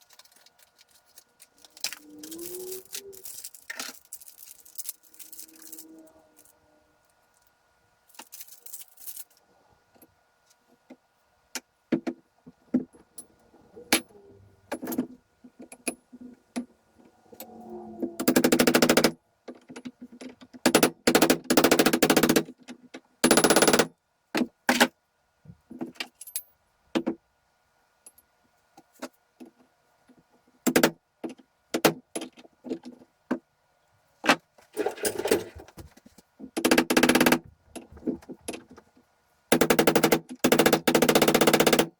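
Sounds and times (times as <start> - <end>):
metal parts clanking: 0.0 - 6.6, 34.8 - 35.9.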